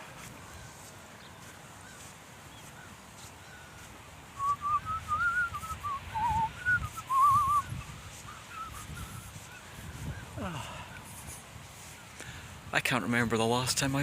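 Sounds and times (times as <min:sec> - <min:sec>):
distant bird calls: 0:00.0 - 0:12.6
person whistling a tune: 0:04.4 - 0:07.7, 0:08.6 - 0:09.2.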